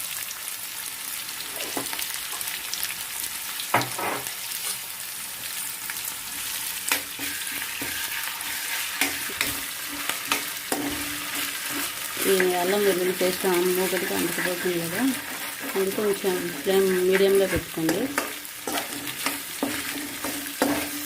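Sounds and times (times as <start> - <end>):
food sizzling in hot oil: 0.0 - 21.0
spatula scraping a pan: 6.3 - 21.0.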